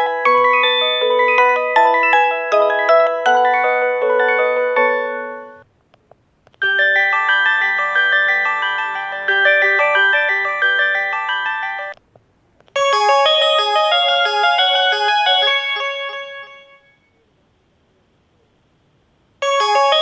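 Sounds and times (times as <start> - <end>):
polyphonic phone ringtones: 0.0 - 5.6, 6.6 - 12.0, 12.8 - 16.9, 19.4 - 20.0.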